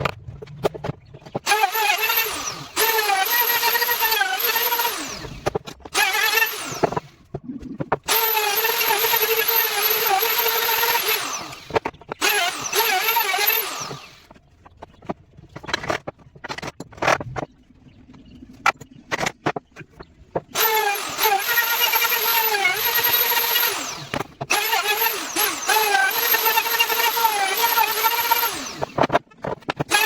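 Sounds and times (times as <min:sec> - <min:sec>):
power tool whining on wood: 0:01.3 - 0:07.3, 0:08.0 - 0:14.4, 0:20.5 - 0:29.2, 0:29.8 - 0:30.0.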